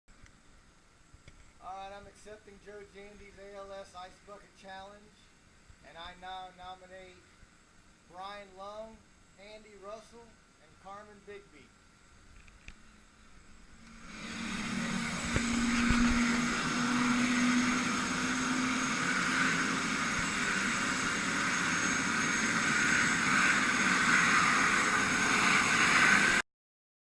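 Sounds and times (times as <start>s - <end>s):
helicopter engine and rotor: 12.9s - 26.4s.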